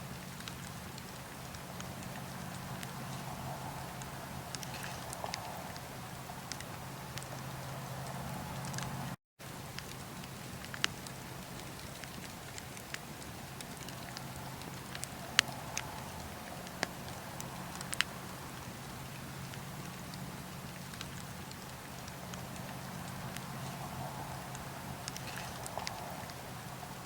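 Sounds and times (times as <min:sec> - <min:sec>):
fire crackling and popping: 0:00.0 - 0:27.0.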